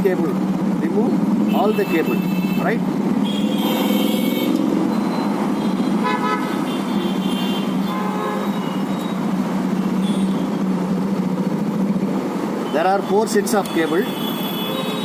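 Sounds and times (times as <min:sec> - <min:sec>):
road traffic hum: 0:00.0 - 0:15.0
vehicle horns tooting: 0:01.4 - 0:09.2, 0:10.0 - 0:10.6, 0:12.6 - 0:15.0.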